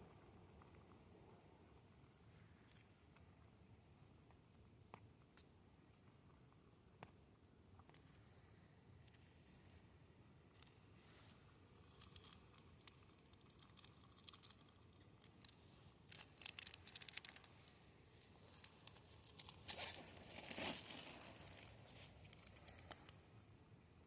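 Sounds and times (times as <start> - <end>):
crinkling and rustling handling noises: 10.5 - 23.2
small clicks: 11.9 - 19.9, 21.4 - 23.2.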